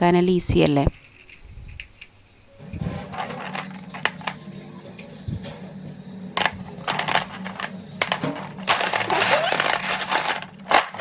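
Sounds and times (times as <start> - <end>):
rattling: 0.9 - 4.4, 6.4 - 11.0
kitchen clicks and knocks: 2.6 - 5.7, 6.4 - 11.0.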